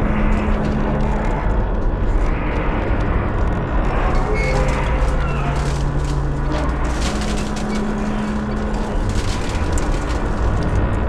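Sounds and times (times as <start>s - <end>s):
crane creaking and grinding: 0.0s - 11.0s
steady mechanical hum: 0.0s - 11.0s
high metallic squeaks: 3.9s - 10.4s.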